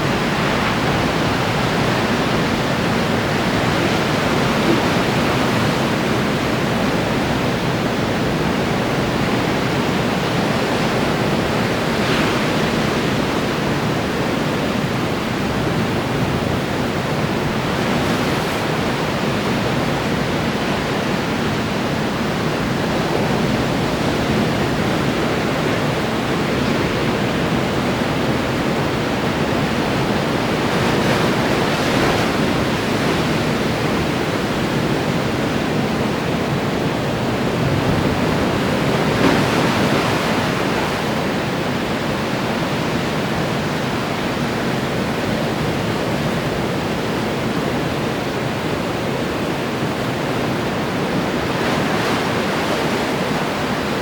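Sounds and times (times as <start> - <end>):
ocean surf washing ashore: 0.0 - 54.0.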